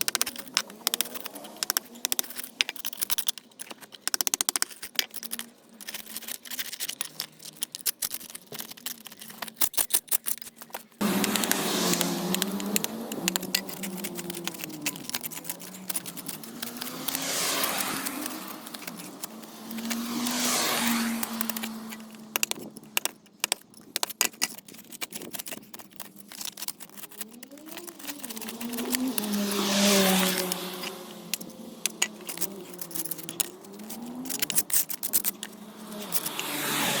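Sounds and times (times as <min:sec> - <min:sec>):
clicking and scraping: 0:00.0 - 0:37.0
engine hum wavering: 0:11.0 - 0:22.5, 0:27.2 - 0:37.0.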